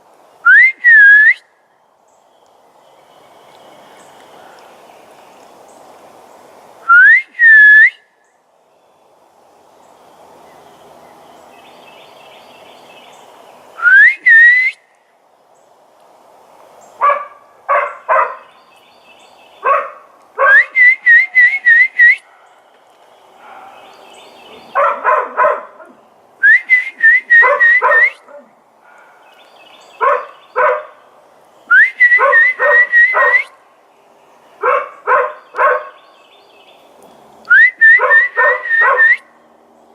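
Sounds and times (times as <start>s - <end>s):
person whistling bird-like calls: 0.4s - 1.4s, 6.9s - 8.0s, 13.8s - 14.8s, 20.5s - 22.2s, 26.4s - 28.2s, 31.7s - 33.5s, 37.5s - 39.3s
dog barking: 17.0s - 18.5s, 19.6s - 20.7s, 22.2s - 22.6s, 23.4s - 23.9s, 24.7s - 26.0s, 27.4s - 29.2s, 30.0s - 31.0s, 32.2s - 33.5s, 34.6s - 36.0s, 38.0s - 39.1s.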